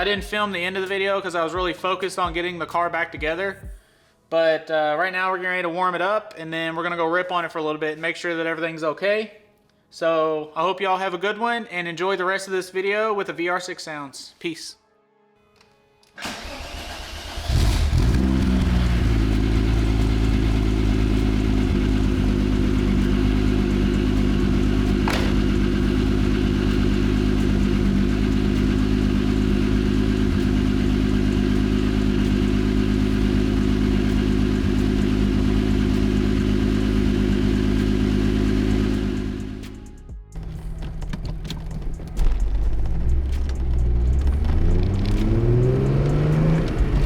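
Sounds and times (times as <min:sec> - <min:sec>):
car engine starting and idling: 0:16.2 - 0:47.0.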